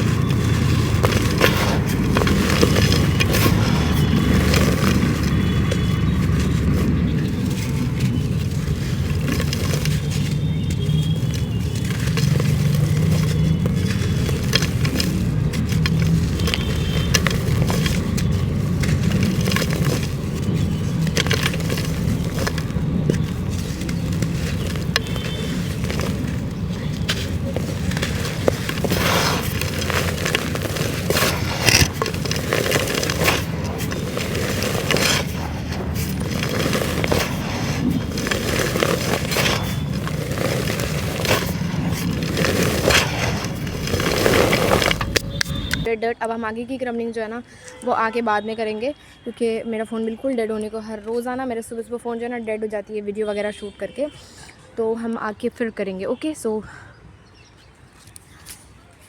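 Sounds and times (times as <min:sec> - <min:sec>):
dirt lumps crunching: 0:00.0 - 0:45.9.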